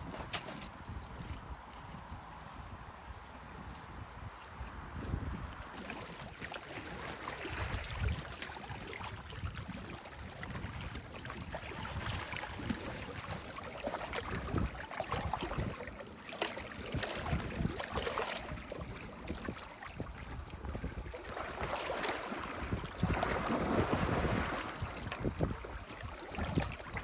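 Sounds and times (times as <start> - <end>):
lake water splashing: 5.6 - 27.0.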